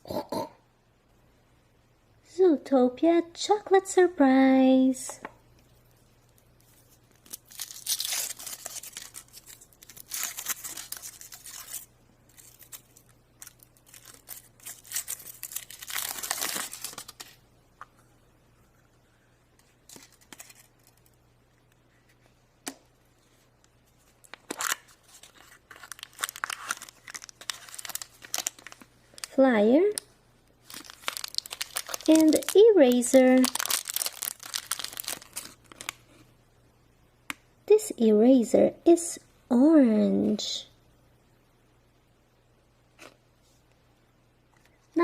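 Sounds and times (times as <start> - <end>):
wrapper tearing and crinkling: 6.6 - 17.4, 19.9 - 21.2, 24.2 - 29.4, 30.6 - 36.0.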